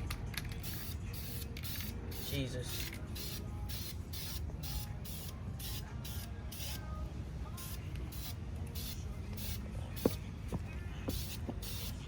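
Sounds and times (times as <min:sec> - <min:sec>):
spray-paint can hissing: 0:00.6 - 0:06.8, 0:07.6 - 0:10.2, 0:11.1 - 0:12.0.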